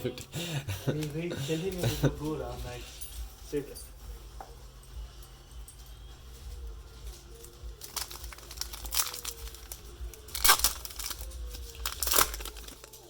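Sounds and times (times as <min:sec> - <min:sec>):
cellophane wrapper crinkling and tearing: 0:07.1 - 0:13.0.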